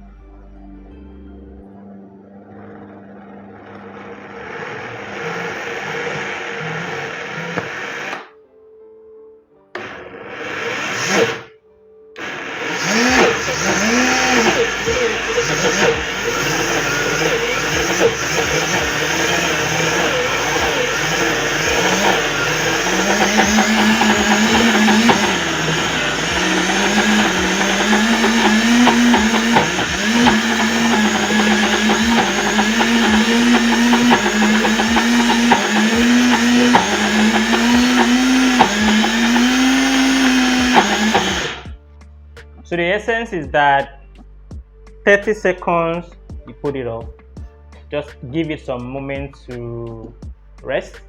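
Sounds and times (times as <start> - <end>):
blender motor humming: 2.3 - 8.3, 9.8 - 11.5, 12.2 - 41.7.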